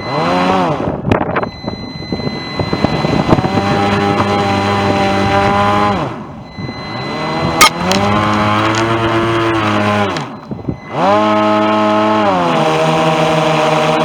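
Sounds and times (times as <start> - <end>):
small motor changing speed: 7.0 - 14.0.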